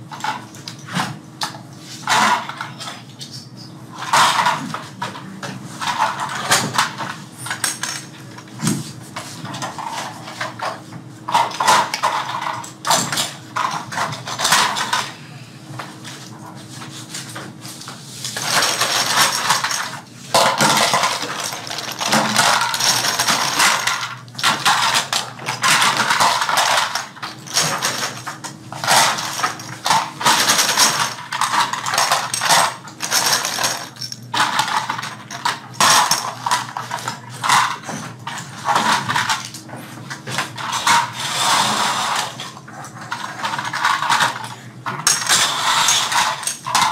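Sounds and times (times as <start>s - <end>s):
clatter of small plastic parts: 4.0s - 15.2s, 18.3s - 46.9s
rummaging through loose pieces: 18.2s - 41.3s, 42.1s - 46.9s.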